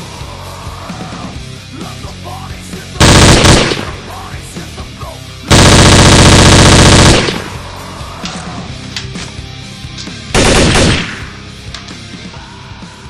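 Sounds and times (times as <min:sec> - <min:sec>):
rock music: 0:00.0 - 0:13.0
automatic gunfire: 0:03.0 - 0:04.1, 0:05.5 - 0:07.7, 0:10.4 - 0:11.4.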